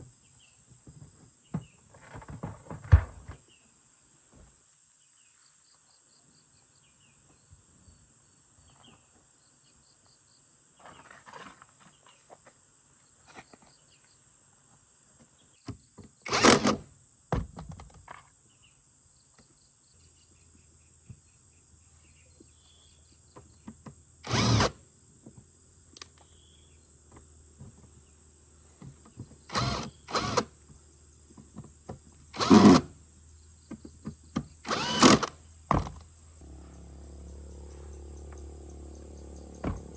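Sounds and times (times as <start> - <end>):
power drill-driver running: 16.3 - 16.8, 24.2 - 24.8, 29.5 - 30.5, 32.4 - 32.9, 34.6 - 35.4
faint low hum: 36.4 - 39.9.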